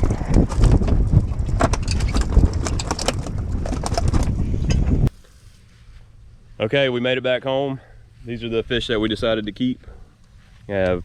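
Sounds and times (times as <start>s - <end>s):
wind buffeting microphone: 0.0s - 5.1s.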